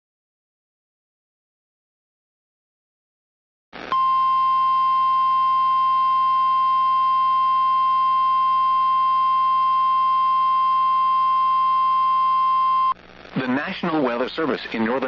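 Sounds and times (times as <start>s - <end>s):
steady high-pitched alarm tone: 3.9s - 13.0s.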